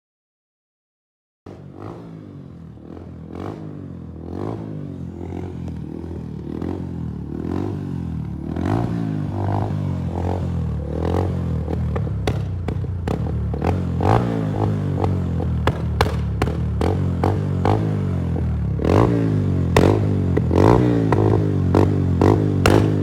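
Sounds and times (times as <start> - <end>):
motorcycle engine revving: 1.5 - 23.0
exhaust pops: 15.6 - 17.0.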